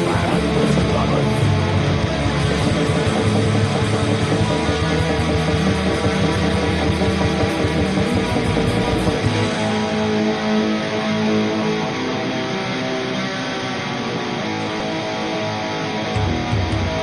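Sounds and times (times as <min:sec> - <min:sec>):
heavy metal music: 0:00.0 - 0:17.0.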